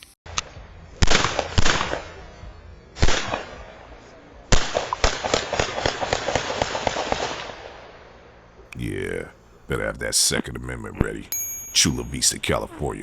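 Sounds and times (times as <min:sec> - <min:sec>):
gunshots: 0:03.0 - 0:03.6, 0:04.5 - 0:07.6.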